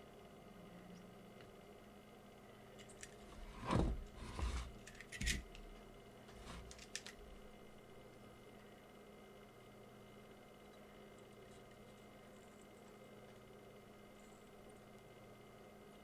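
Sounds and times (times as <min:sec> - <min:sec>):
small objects clicking and rustling: 0:06.6 - 0:07.3.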